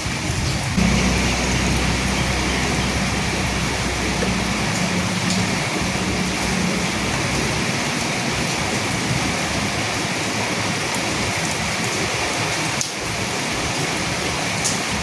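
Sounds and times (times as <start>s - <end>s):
heavy rain hissing: 0.0s - 15.0s
low rumble of thunder: 0.3s - 11.3s.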